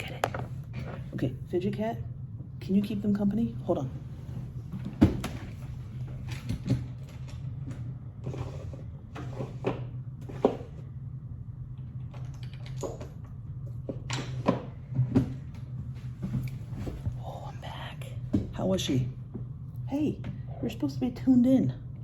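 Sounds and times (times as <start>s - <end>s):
low hum: 0.0s - 22.0s
objects knocking and rattling: 11.9s - 17.2s.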